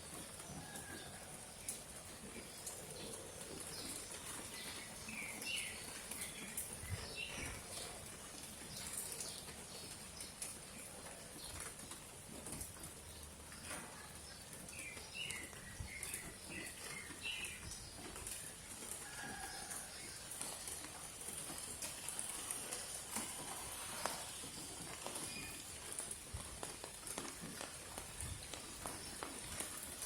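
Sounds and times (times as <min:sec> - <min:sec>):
steady rain hiss: 0:00.0 - 0:30.0.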